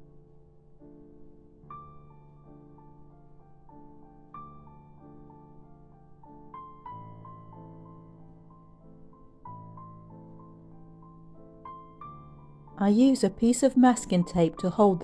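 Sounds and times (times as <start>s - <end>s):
soft piano music: 0.0s - 15.0s.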